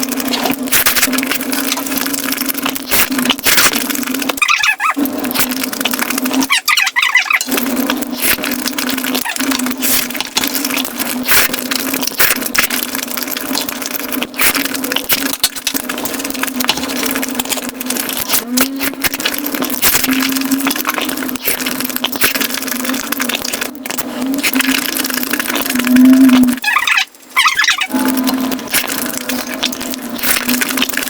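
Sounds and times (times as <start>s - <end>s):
rapid chewing crunches: 0.0s - 31.0s
low hum: 27.9s - 31.0s.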